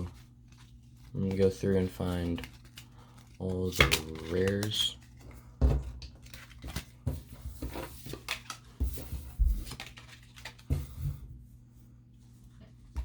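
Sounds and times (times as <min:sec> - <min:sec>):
trading cards rustling and sliding: 0:00.0 - 0:05.5, 0:06.1 - 0:10.7.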